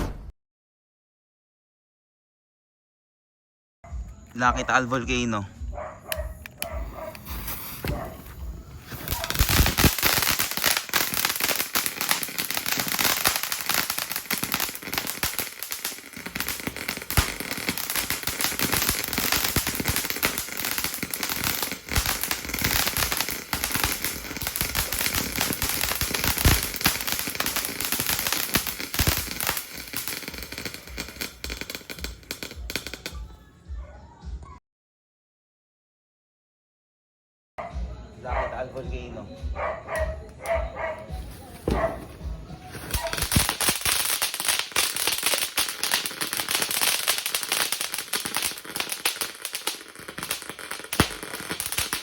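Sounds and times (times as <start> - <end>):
firework fountain hissing and crackling: 6.4 - 33.3, 41.1 - 52.0.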